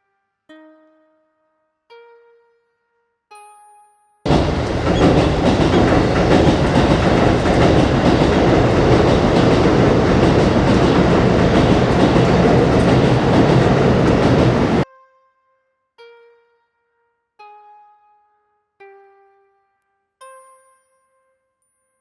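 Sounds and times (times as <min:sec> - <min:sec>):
train rumbling overhead: 0:04.3 - 0:14.8.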